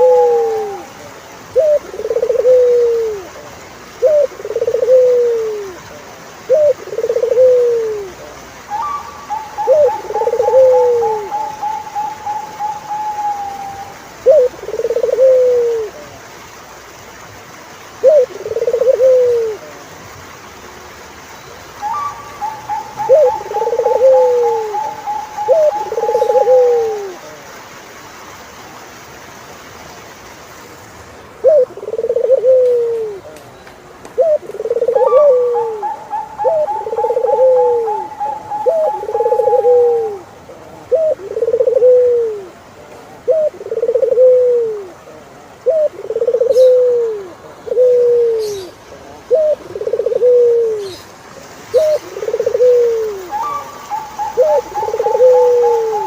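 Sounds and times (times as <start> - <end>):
doves cooing: 0.0 - 16.2, 18.0 - 19.8, 21.8 - 27.5, 31.4 - 33.4, 34.1 - 56.0.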